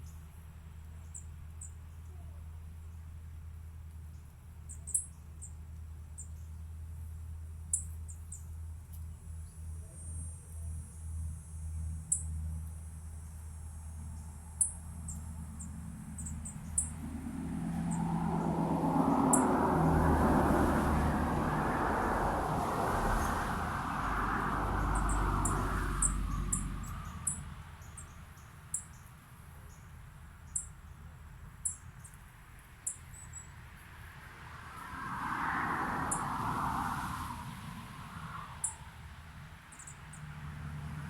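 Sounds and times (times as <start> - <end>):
small birds chirping: 4.0 - 17.1, 24.8 - 33.5
vehicle passing: 10.8 - 28.0, 33.6 - 41.0.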